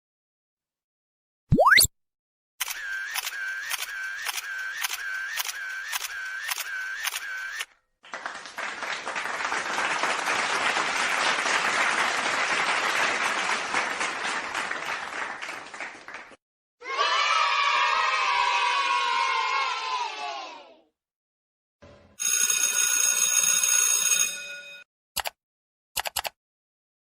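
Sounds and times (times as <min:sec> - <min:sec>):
camera shutter clicking: 0:02.6 - 0:07.6
crowd applause: 0:08.0 - 0:16.4.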